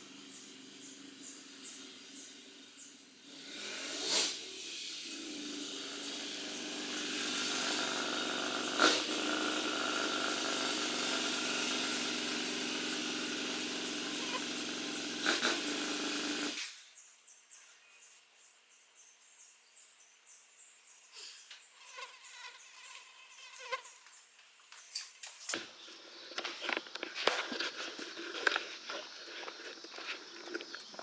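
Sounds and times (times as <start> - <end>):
vehicle engine running: 5.4 - 16.2.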